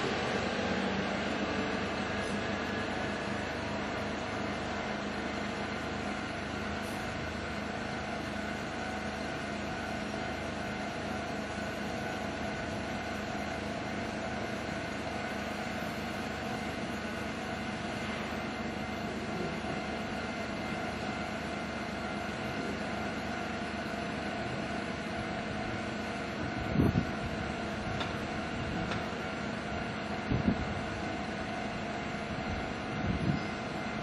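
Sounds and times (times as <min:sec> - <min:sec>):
steady mechanical hum: 0:00.0 - 0:34.0.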